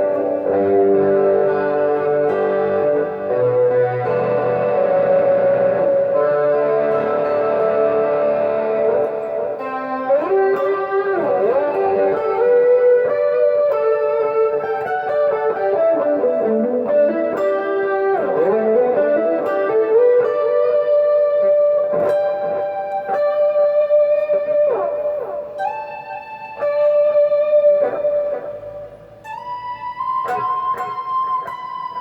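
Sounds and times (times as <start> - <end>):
electric guitar lead notes: 0.0 - 32.0.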